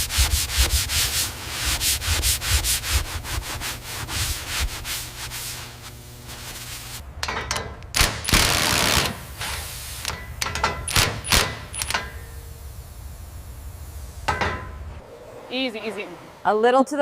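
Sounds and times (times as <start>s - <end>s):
metal tools clanking: 7.2s - 7.8s.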